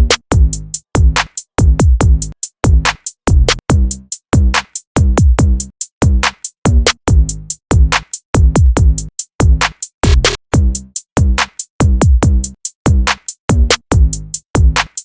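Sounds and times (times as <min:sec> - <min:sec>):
electronic music with drum machine: 0:06.7 - 0:10.7.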